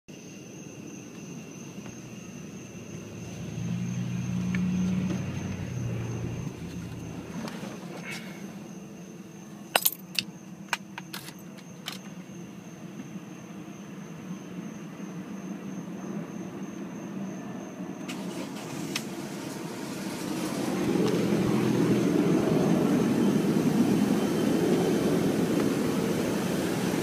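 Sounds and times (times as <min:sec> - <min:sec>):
car engine running: 0:02.8 - 0:08.6, 0:18.1 - 0:27.0.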